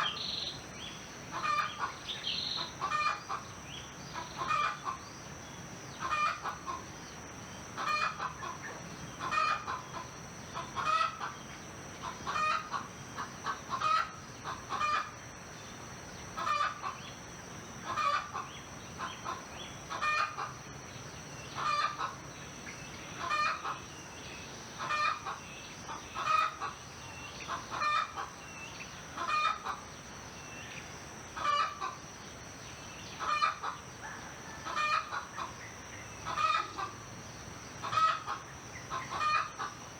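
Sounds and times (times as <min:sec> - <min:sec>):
fowl clucking: 0:01.3 - 0:02.0, 0:02.6 - 0:03.4, 0:04.2 - 0:05.0, 0:06.0 - 0:06.8, 0:07.8 - 0:11.4, 0:12.0 - 0:15.1, 0:16.4 - 0:17.0, 0:17.8 - 0:20.6, 0:21.6 - 0:22.2, 0:23.2 - 0:23.8, 0:24.8 - 0:26.8, 0:27.4 - 0:28.4, 0:29.2 - 0:29.8, 0:31.4 - 0:32.0, 0:33.2 - 0:35.6, 0:36.2 - 0:37.0, 0:37.8 - 0:39.8.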